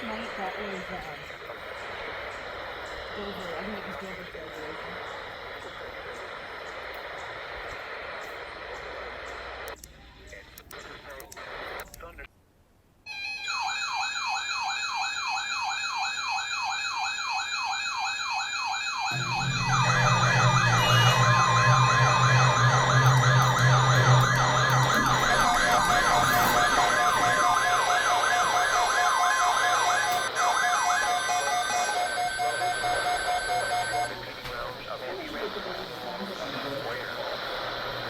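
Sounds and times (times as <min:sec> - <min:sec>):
emergency vehicle sirens yelping: 0:13.1 - 0:34.7
low steady drone: 0:19.1 - 0:30.3.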